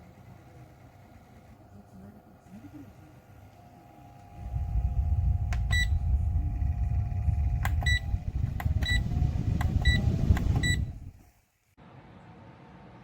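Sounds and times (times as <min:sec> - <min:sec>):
fan air blowing on microphone: 0:04.0 - 0:11.4
fan control clicks: 0:05.4 - 0:06.2, 0:07.5 - 0:11.0.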